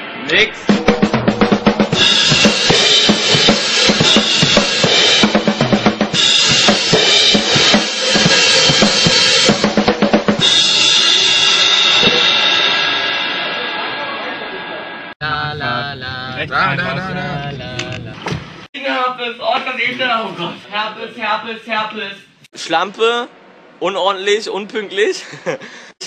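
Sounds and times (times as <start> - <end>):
drum kit played hard: 0.4 - 14.1
crashing cymbals: 0.4 - 15.2.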